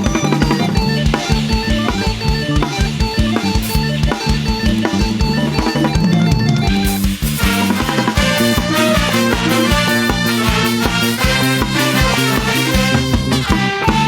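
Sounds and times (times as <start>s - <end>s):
fast bass drum beat: 0.0s - 14.0s
brass band held notes: 6.8s - 14.0s
cymbals: 7.0s - 14.0s
snare drum: 7.3s - 13.1s.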